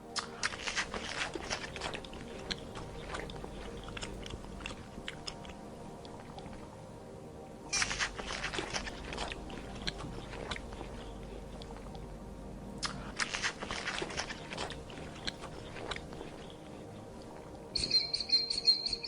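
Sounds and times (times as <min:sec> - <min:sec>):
steady low hum: 0:00.0 - 0:19.0
animal chewing crunchy food: 0:12.8 - 0:16.7.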